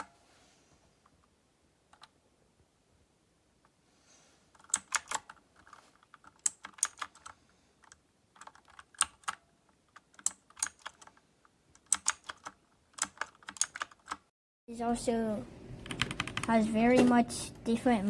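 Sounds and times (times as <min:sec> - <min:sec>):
mechanical keyboard typing: 0:04.6 - 0:09.4, 0:10.0 - 0:11.2, 0:11.8 - 0:14.3, 0:15.8 - 0:17.2.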